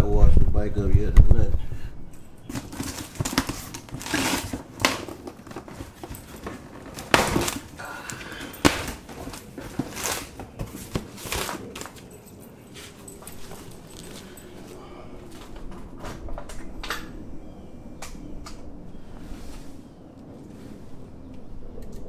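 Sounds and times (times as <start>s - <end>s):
packaging rustling and crackling: 2.4s - 15.6s.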